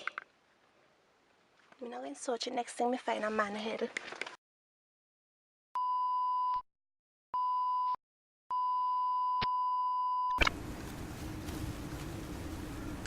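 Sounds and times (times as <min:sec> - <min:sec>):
censor bleep tone: 0:05.8 - 0:06.6, 0:07.4 - 0:10.5
noisy background rush: 0:10.4 - 0:13.0.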